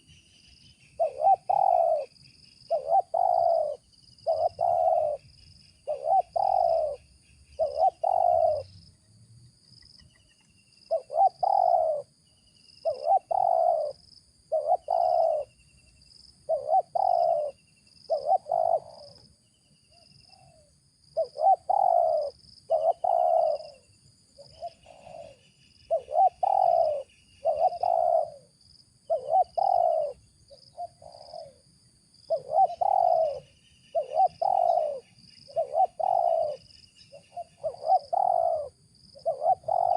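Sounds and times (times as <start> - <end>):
small birds chirping: 0.0 - 28.5, 29.1 - 31.6, 32.2 - 39.9
dove cooing: 1.0 - 8.7, 10.9 - 12.2, 12.8 - 15.6, 16.4 - 19.3, 19.9 - 31.6, 32.2 - 39.9.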